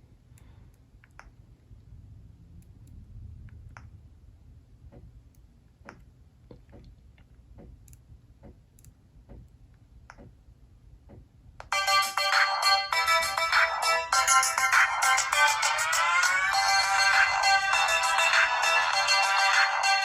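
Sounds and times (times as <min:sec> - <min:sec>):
faint irregular clicks: 0:00.3 - 0:01.4, 0:04.9 - 0:10.4
phone ringtone melody: 0:11.7 - 0:20.0.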